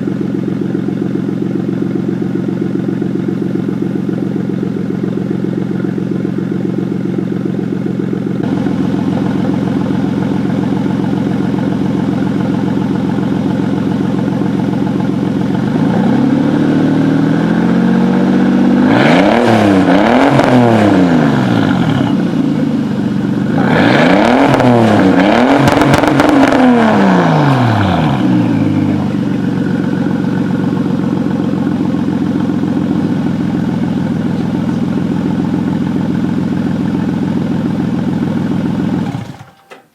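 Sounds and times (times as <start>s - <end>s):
car engine idling: 0.0s - 18.8s, 20.8s - 23.6s, 26.2s - 39.9s
engine revving: 15.6s - 22.4s, 23.5s - 29.2s.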